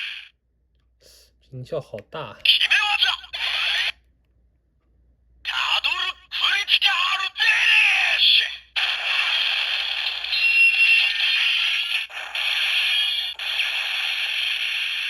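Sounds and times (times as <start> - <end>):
loud distorted electronic toy sound: 0.0 - 0.3, 2.6 - 4.0, 5.5 - 15.0.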